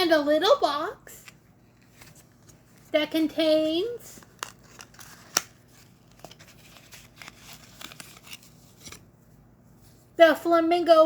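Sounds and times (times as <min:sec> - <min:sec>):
cardboard and plastic crinkling: 0:04.1 - 0:09.1.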